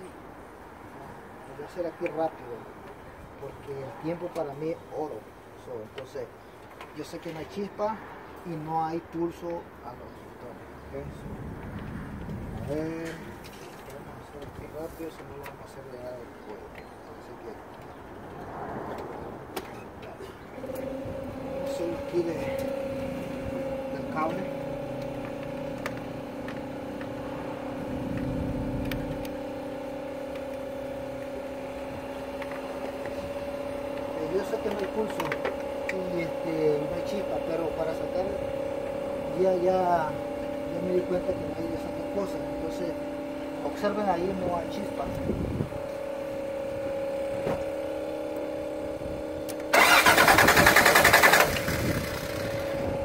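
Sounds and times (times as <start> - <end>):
steady mechanical hum: 0.0 - 53.0
engine starter cranking: 49.4 - 53.0.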